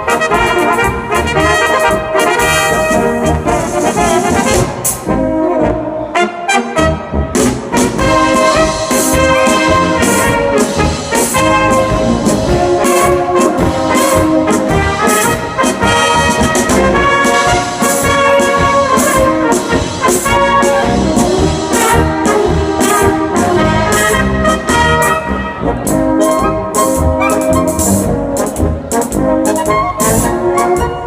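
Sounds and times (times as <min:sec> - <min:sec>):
brass band playing a polka: 0:00.0 - 0:31.0.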